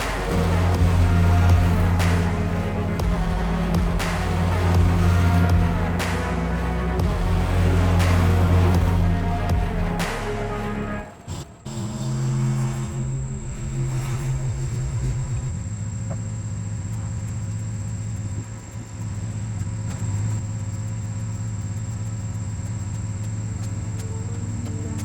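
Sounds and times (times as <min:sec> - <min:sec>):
small petrol engine running: 0:14.3 - 0:25.0.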